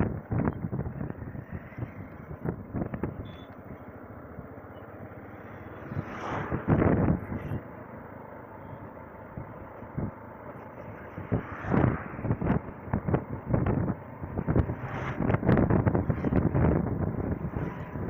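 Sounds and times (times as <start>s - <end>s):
wind buffeting microphone: 0.0s - 3.8s, 5.8s - 7.7s, 9.3s - 18.0s
vehicle road rush: 0.0s - 18.0s.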